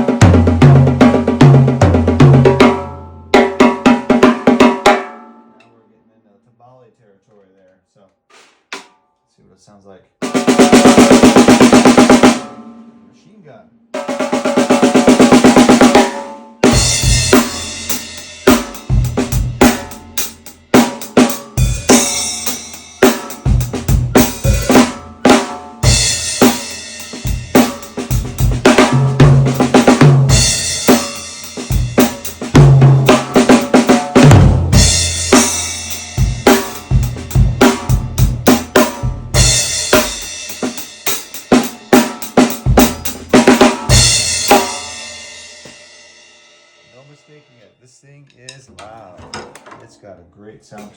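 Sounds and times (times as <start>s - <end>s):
bass drum: 0.0s - 4.1s, 14.6s - 45.8s
snare drum roll: 8.3s - 9.0s, 10.2s - 12.7s, 14.0s - 45.0s
cymbals: 14.0s - 48.7s.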